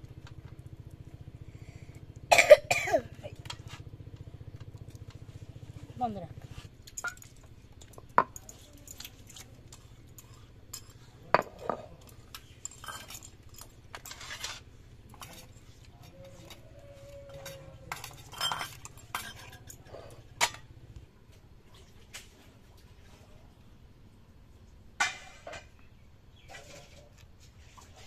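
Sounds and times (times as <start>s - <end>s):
steady low hum: 0.0s - 21.4s
utensils scraping: 8.4s - 20.4s
metal cookware clinking: 10.7s - 14.2s, 16.1s - 20.7s.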